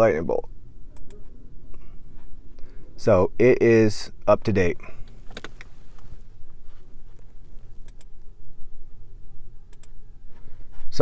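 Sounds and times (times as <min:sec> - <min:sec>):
faint clicks: 0:07.2 - 0:08.2, 0:09.7 - 0:10.0.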